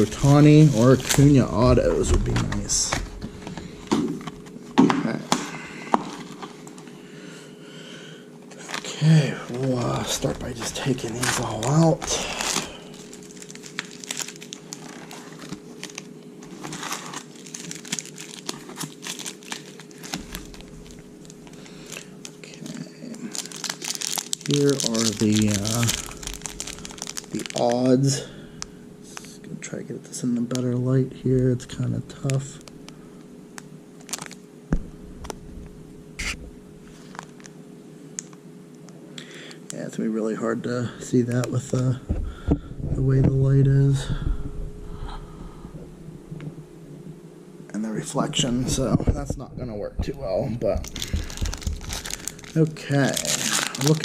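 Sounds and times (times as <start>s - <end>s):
card packs crinkling: 0.0s - 6.9s, 8.5s - 29.7s, 30.4s - 37.6s, 41.2s - 42.0s, 50.3s - 54.0s
faint steady hum: 0.0s - 54.0s
dull thump: 34.7s - 35.7s
cardboard box rustling: 50.9s - 52.2s.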